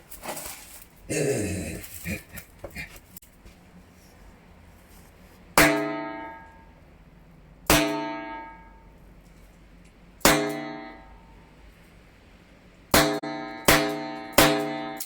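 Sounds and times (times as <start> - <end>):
pipe ringing hollow tone: 5.6 - 6.8, 7.7 - 9.0, 10.3 - 11.5, 12.9 - 14.9
firecrackers banging in a pipe: 10.2 - 11.2, 12.9 - 15.0.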